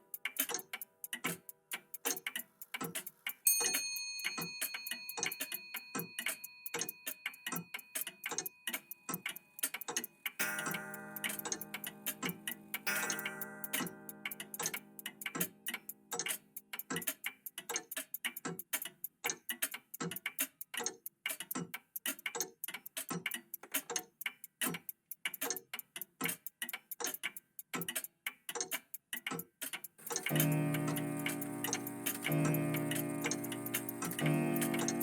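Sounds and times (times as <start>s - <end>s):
clocks ticking: 0.0s - 35.0s
ringing chime: 3.5s - 8.2s, 10.4s - 14.2s.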